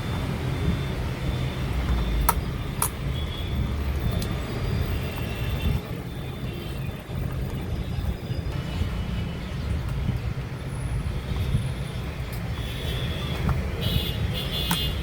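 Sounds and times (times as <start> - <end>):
sharp clicks: 14.6 - 15.0.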